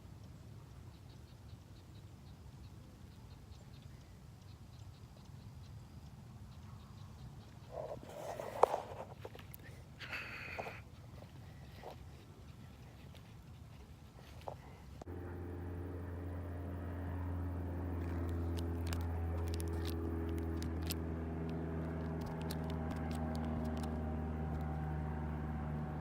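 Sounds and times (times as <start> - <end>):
motor humming: 15.1 - 26.0
sharp clicks: 17.9 - 24.8.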